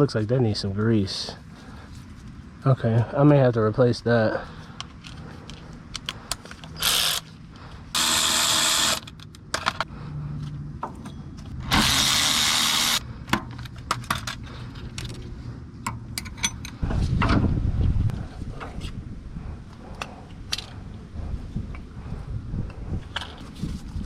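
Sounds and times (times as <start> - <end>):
power tool spinning bolts: 6.8 - 7.2, 7.9 - 9.2, 11.6 - 13.0
tool handling clicks and clanks: 8.8 - 9.9, 13.2 - 16.8
low rumbling noise: 14.4 - 24.0.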